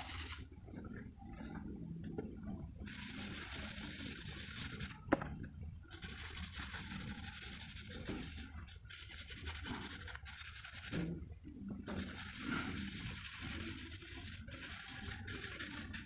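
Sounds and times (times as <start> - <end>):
pencil scratching on paper: 2.9 - 5.3, 5.9 - 11.2, 11.9 - 16.0.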